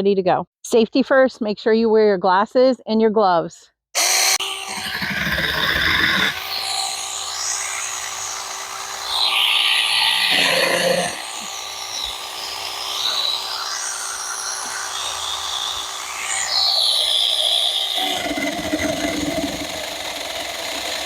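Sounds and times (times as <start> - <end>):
electric chainsaw cutting branches: 4.0 - 21.0.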